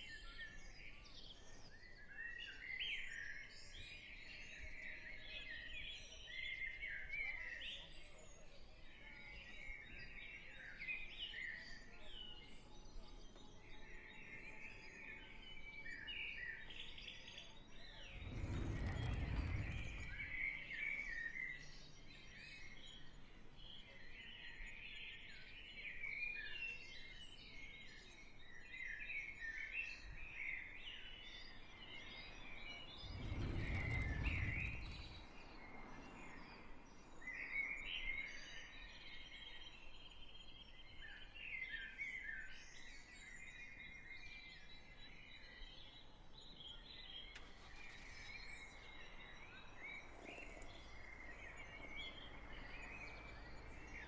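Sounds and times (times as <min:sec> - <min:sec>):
small birds chirping: 0:00.0 - 0:54.0
low rumble: 0:17.7 - 0:21.7, 0:32.2 - 0:36.4, 0:47.3 - 0:54.0.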